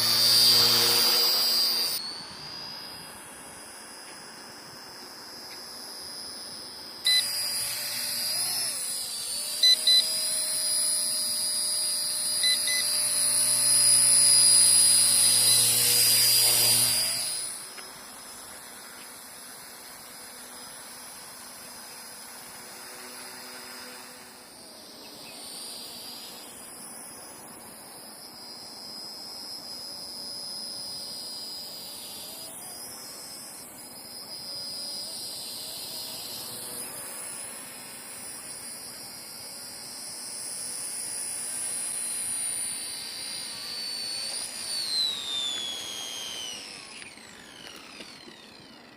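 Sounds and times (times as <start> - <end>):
toy helicopter motor whining: 0.0 - 48.9
short electronic beeps: 7.1 - 7.3, 9.6 - 10.1.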